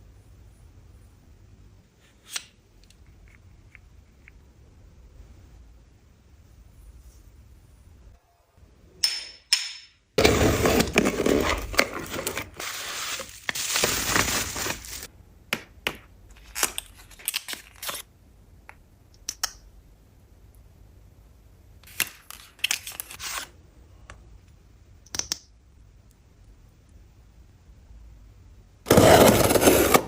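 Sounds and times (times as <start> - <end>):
packaging rustling and crinkling: 10.2 - 15.1.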